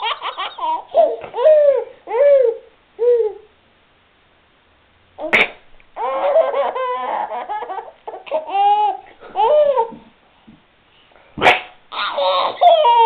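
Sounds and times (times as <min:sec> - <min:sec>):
baby laughing and babbling: 0:00.0 - 0:03.5, 0:05.2 - 0:10.1, 0:11.9 - 0:13.0
baby sneezing: 0:05.2 - 0:05.7, 0:11.4 - 0:11.8.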